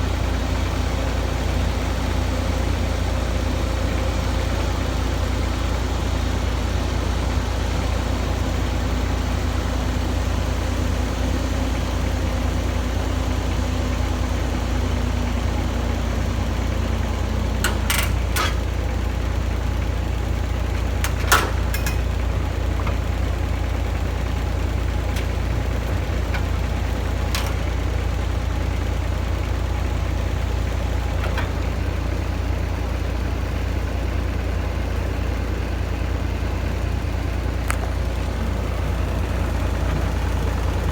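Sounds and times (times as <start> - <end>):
diesel excavator engine rumbling: 0.0 - 40.9
sharp metal clanks: 17.6 - 18.7, 21.0 - 22.4.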